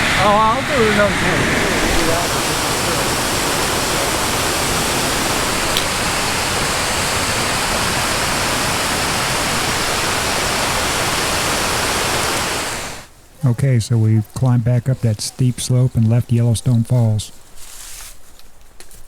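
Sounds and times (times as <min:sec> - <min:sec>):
waterfall rushing: 0:00.0 - 0:17.3.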